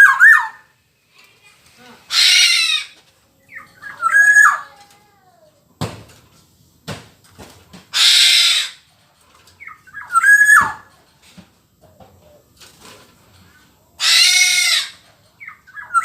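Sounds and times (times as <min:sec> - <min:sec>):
bird harsh rasping call: 0:02.1 - 0:04.7, 0:07.9 - 0:08.9, 0:14.0 - 0:16.0.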